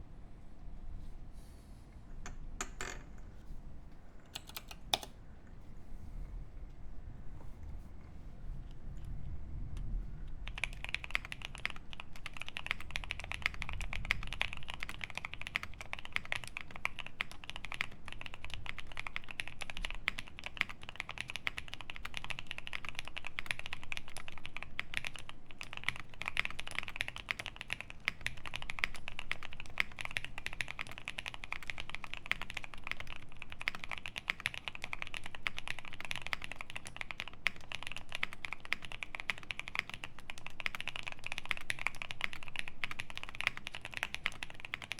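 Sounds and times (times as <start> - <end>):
mechanical keyboard typing: 4.2 - 5.2, 10.4 - 44.9.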